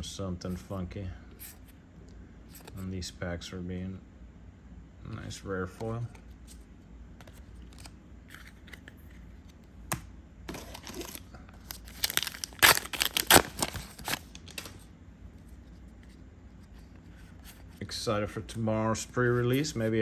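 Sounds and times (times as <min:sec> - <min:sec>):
wrapper tearing and crackling: 0:10.5 - 0:14.8
wrapper rustling: 0:10.5 - 0:14.9.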